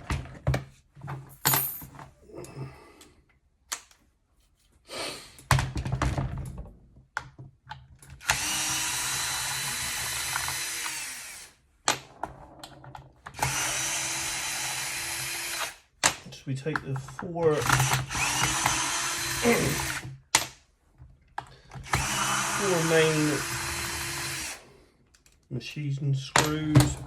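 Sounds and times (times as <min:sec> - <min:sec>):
cordless drill running: 0:08.2 - 0:11.5, 0:13.4 - 0:15.8, 0:17.6 - 0:20.1, 0:21.8 - 0:24.7.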